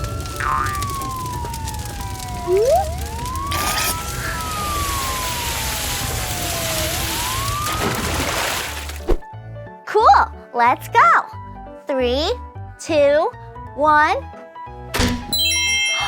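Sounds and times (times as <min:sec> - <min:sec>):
siren wailing: 0:00.0 - 0:09.0
burst of noise: 0:00.0 - 0:09.2.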